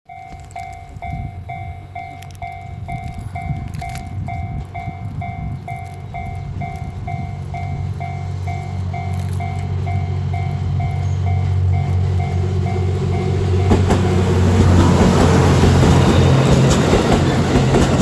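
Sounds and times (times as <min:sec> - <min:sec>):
level crossing warning bell: 0:00.1 - 0:17.8
train rumbling: 0:00.1 - 0:18.0.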